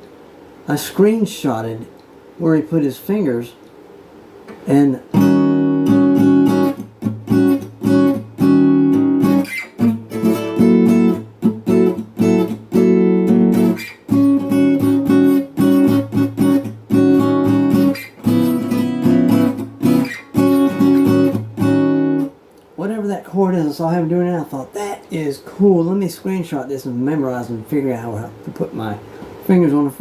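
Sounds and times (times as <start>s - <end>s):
acoustic guitar strummed: 5.1s - 22.4s.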